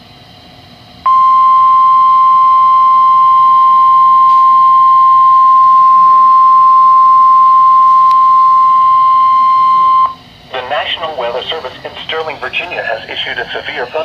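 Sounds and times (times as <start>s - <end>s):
steady alarm tone: 1.1s - 10.2s.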